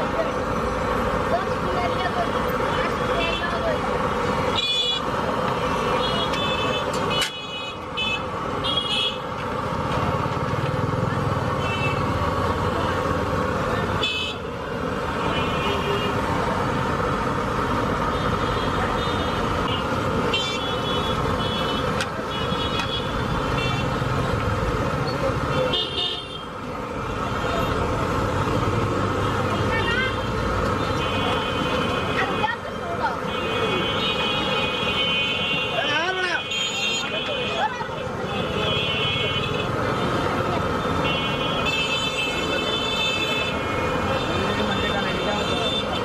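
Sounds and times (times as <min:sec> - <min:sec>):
busy street traffic: 0:00.0 - 0:46.0.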